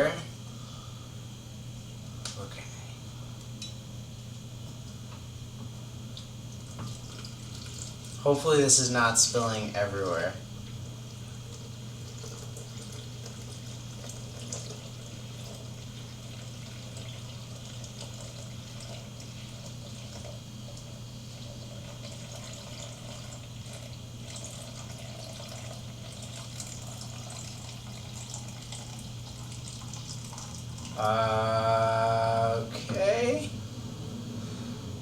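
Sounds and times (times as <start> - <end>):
tap water running into container: 6.5 - 8.2, 11.4 - 31.0.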